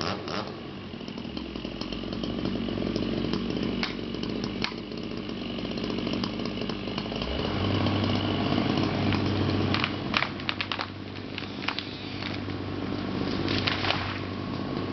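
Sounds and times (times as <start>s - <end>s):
excavator engine running: 0.0s - 14.9s
sharp cracks: 8.8s - 12.6s, 13.2s - 14.3s.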